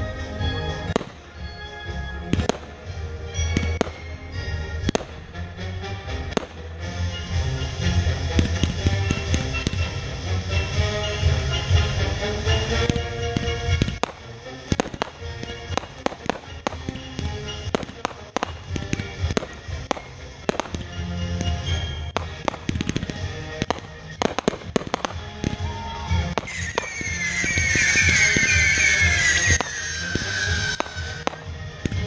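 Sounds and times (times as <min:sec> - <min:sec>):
music playing: 0:00.0 - 0:32.0
fireworks bangs and crackles: 0:00.3 - 0:01.6, 0:02.3 - 0:32.0
shrill wavering whistles: 0:25.6 - 0:31.3.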